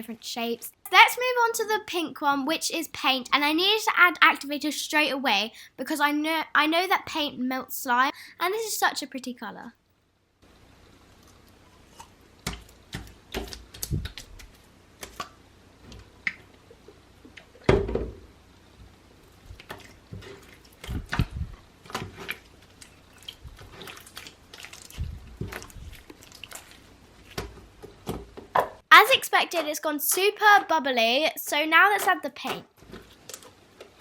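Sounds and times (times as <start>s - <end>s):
slime squelching: 11.0s - 17.7s, 19.2s - 28.1s
slime dripping: 21.9s - 27.5s.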